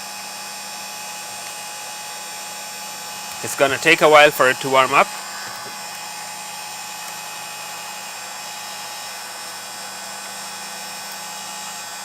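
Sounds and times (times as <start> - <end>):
heat gun running: 0.0 - 12.0.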